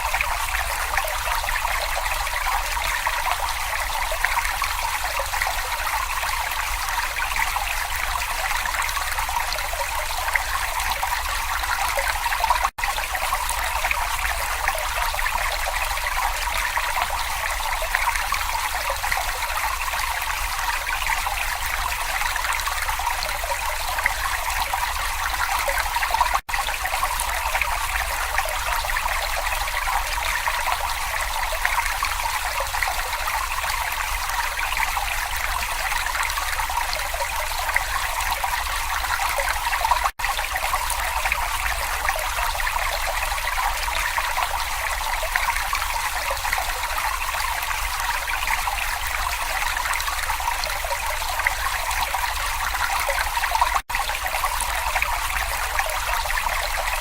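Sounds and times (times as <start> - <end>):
brook water trickling: 0.0 - 57.0.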